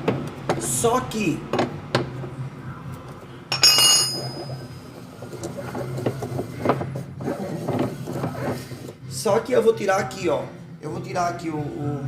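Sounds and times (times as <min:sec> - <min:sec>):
metal clink with ringing: 0:03.5 - 0:04.4.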